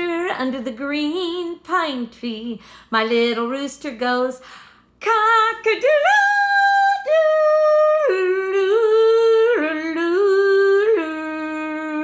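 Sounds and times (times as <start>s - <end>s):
woman singing long notes: 5.1s - 12.0s.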